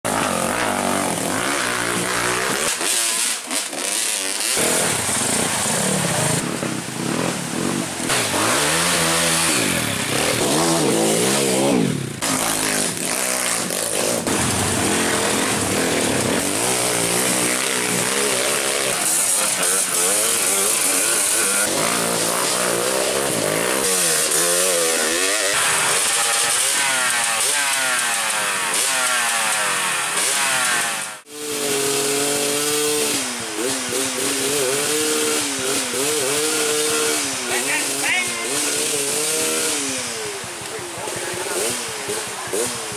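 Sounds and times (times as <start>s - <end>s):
motorcycle engines revving: 0.0s - 42.9s.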